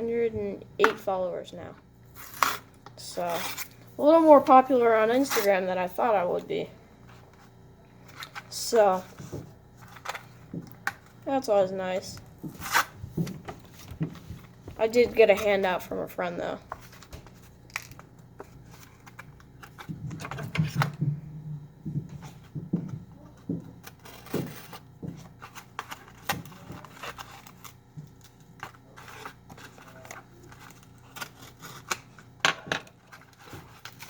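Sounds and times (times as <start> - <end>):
plastic packaging clicks and crinkles: 16.8 - 21.0, 23.8 - 34.0.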